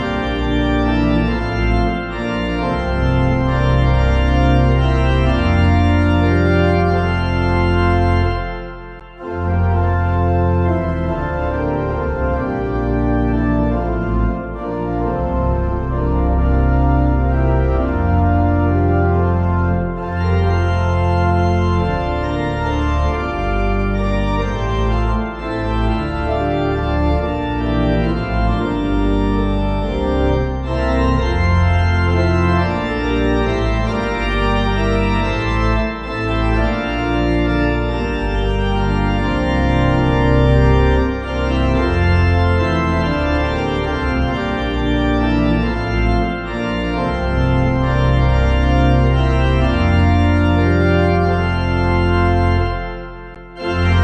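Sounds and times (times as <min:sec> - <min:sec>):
organ music: 0:00.0 - 0:54.0.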